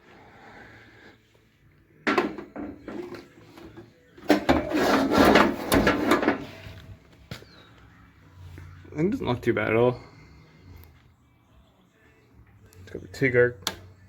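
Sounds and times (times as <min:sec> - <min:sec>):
hard objects clunking and knocking: 0:02.0 - 0:07.5
rattling and clattering: 0:04.2 - 0:06.6.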